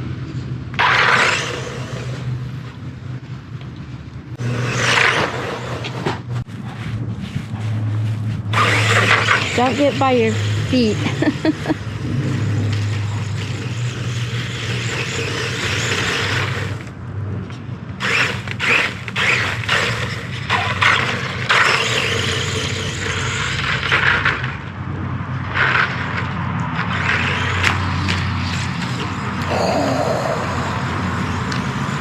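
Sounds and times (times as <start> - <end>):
electric motor humming: 4.4 - 6.0, 8.5 - 16.9, 18.0 - 20.2, 28.6 - 32.0
tyres scraping: 4.4 - 16.9.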